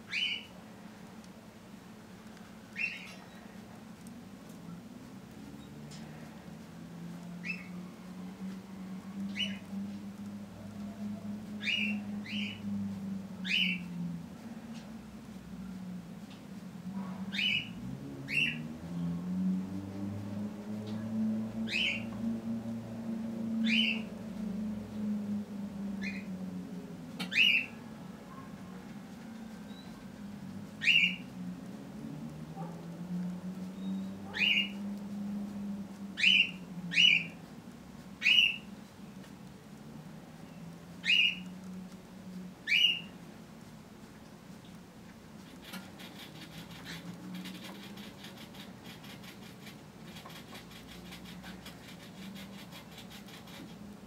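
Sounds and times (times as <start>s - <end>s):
low steady hum: 0.0s - 54.0s
bird chirping: 0.1s - 0.5s, 2.7s - 3.5s, 7.4s - 7.8s, 9.3s - 9.8s, 11.6s - 12.7s, 13.4s - 13.9s, 17.3s - 19.1s, 21.6s - 22.2s, 23.6s - 24.2s, 26.0s - 26.4s, 27.2s - 27.8s, 30.8s - 31.3s, 33.7s - 34.9s, 36.2s - 37.4s, 38.2s - 38.7s, 40.4s - 41.5s, 42.6s - 43.1s.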